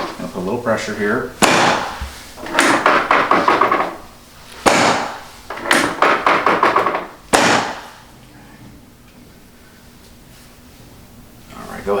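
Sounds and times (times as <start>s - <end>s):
sharp knock: 1.4s - 4.0s, 4.6s - 8.0s.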